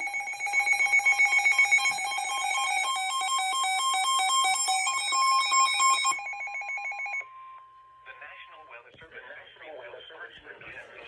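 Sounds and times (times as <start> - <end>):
electronic alarm beeping: 0.0 - 7.7.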